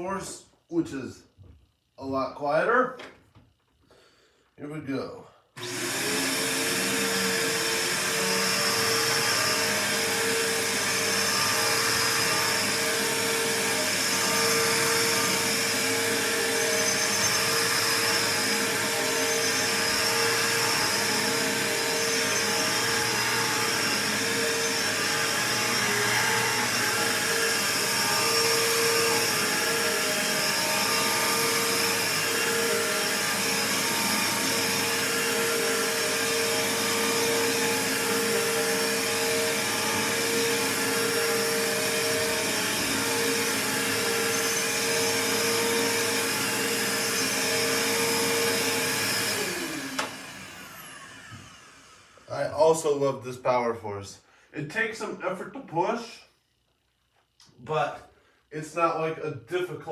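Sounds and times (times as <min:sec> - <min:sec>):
vacuum cleaner running: 0:05.6 - 0:53.1.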